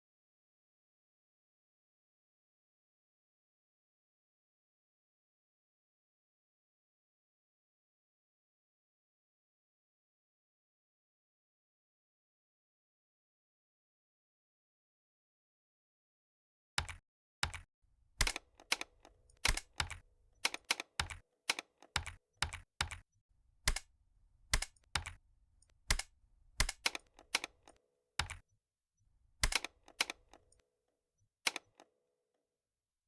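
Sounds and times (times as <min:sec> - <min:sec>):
keyboard keystroke clicks: 0:16.8 - 0:23.0, 0:23.7 - 0:23.9, 0:24.5 - 0:28.4, 0:29.4 - 0:30.6, 0:31.5 - 0:31.9.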